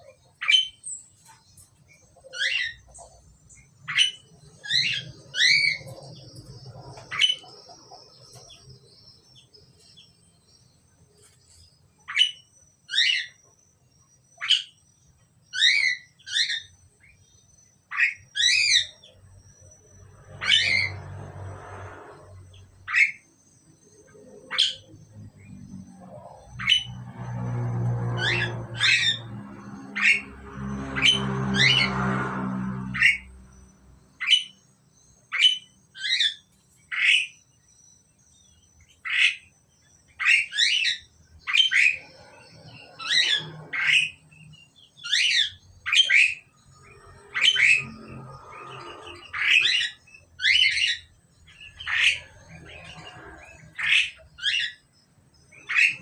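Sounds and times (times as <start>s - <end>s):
starlings calling: 0.0s - 13.4s, 15.4s - 56.0s
low rumbling noise: 23.8s - 34.2s.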